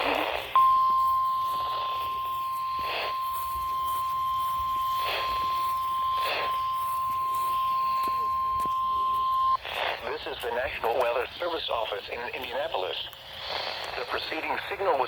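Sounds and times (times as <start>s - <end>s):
steady alarm tone from radio speaker: 0.0s - 9.6s
faint radio static: 0.0s - 15.0s.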